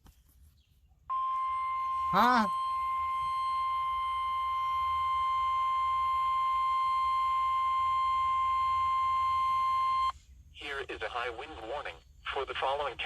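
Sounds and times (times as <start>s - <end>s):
faint low hum: 0.1s - 13.0s
steady high-pitched alarm tone: 1.1s - 10.1s.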